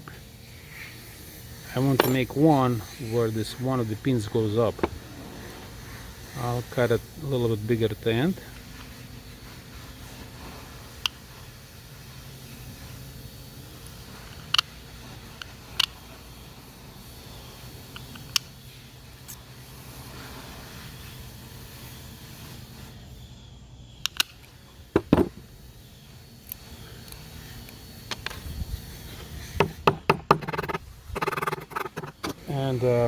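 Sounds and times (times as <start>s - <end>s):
tin snips cutting metal: 1.9s - 2.4s.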